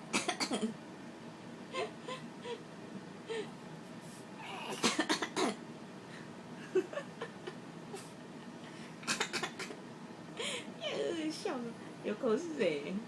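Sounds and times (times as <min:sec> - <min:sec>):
person forcing coughs: 0:00.1 - 0:00.8, 0:04.6 - 0:05.6, 0:09.0 - 0:09.8.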